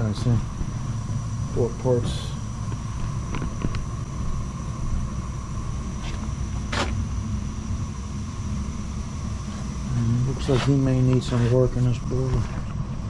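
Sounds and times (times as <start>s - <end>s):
boiler rumbling: 0.0s - 13.0s
faint high whine: 0.0s - 13.0s.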